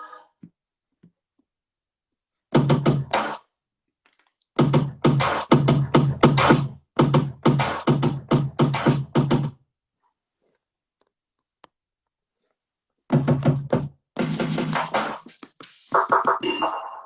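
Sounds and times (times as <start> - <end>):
electronic music with drum-machine beat: 4.7 - 9.5, 13.2 - 17.0.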